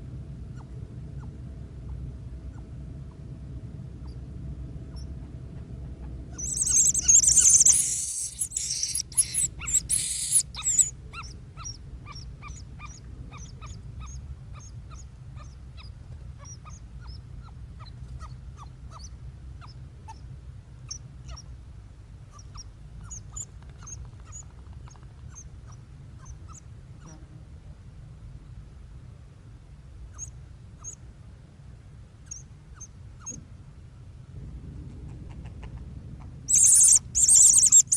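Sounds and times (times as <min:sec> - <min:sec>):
high hissing noise: 0:06.4 - 0:10.9, 0:36.5 - 0:37.9
short high bird chirps: 0:06.4 - 0:10.9, 0:36.5 - 0:37.9.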